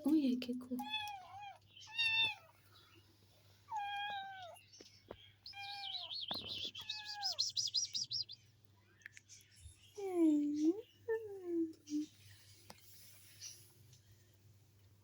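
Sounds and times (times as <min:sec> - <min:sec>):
kitten meowing: 0:00.9 - 0:02.5, 0:03.7 - 0:04.6, 0:05.5 - 0:08.3
fast high warbling chirp: 0:05.5 - 0:08.4.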